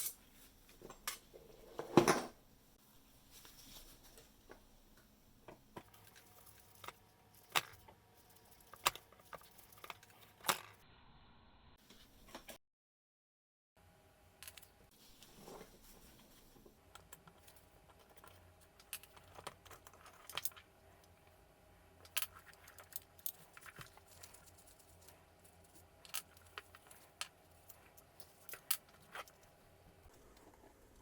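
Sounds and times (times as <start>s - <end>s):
small parts and tools clicking: 5.8s - 10.8s, 16.9s - 21.4s, 22.0s - 30.7s.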